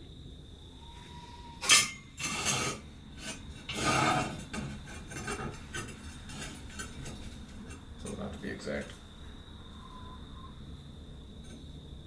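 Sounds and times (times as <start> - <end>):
metal parts scraping and rubbing: 1.6 - 8.4.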